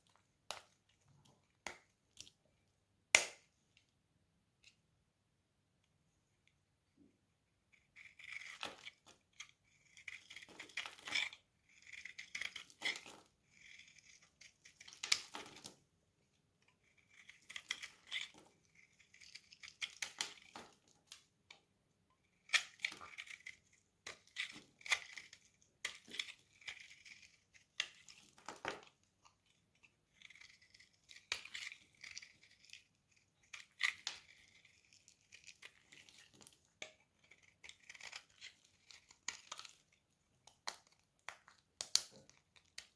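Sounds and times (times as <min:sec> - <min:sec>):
knife scraping dry soap: 0:07.7 - 0:15.8, 0:16.6 - 0:42.9.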